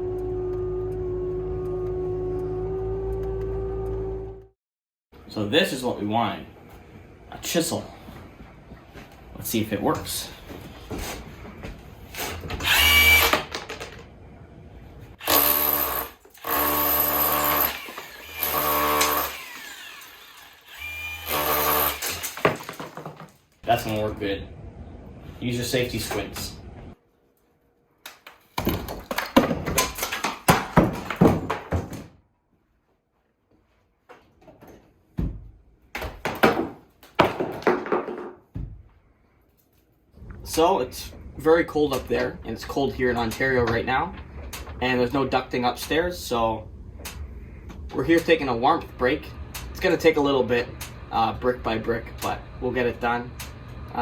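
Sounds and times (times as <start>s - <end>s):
hammer drill hammering: 12.6s - 13.5s, 15.2s - 22.7s
heavy knocks on masonry: 28.6s - 32.2s, 35.2s - 38.8s.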